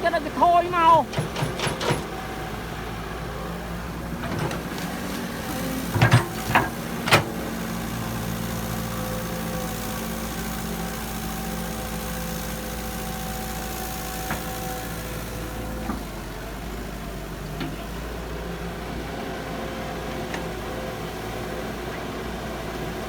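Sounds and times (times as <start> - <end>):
heavy machine engine running: 0.0 - 23.0
sharp knocks: 1.0 - 2.1.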